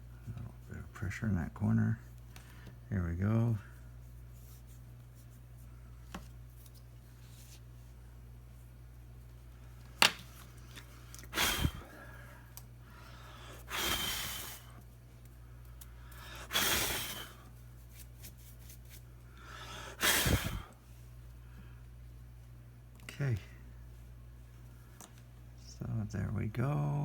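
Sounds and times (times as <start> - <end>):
heavy breathing into microphone: 11.3 - 14.7, 19.3 - 20.7.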